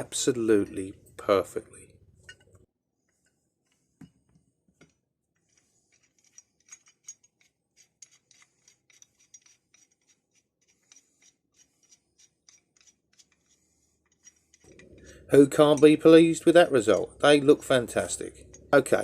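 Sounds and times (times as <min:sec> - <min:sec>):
metallic clicking of wrench nut: 0:05.9 - 0:15.9.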